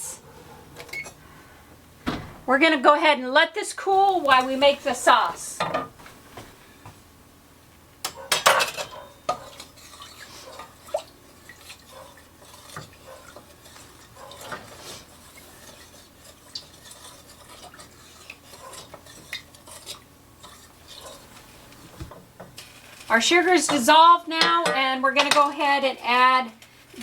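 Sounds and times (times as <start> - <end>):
spoon stirring in a saucepan: 8.0 - 27.0
cookware clattering: 8.2 - 10.7.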